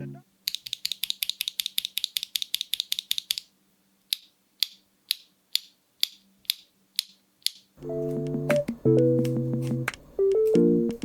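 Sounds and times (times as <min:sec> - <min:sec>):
music: 0:07.8 - 0:11.0.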